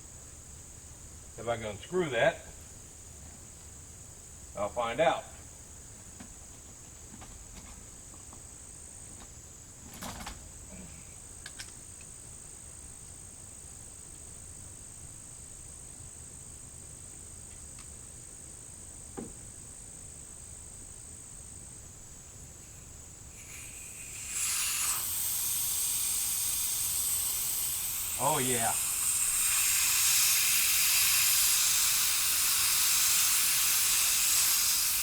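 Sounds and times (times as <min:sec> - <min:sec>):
faint knocks on drain valve: 0:19.2 - 0:19.4
compressed air hissing out: 0:22.6 - 0:35.0
thin high-pitched whine: 0:22.7 - 0:35.0.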